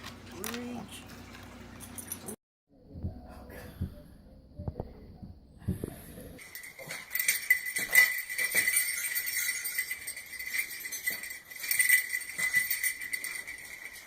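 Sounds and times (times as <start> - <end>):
small bell jingling: 6.4 - 14.0.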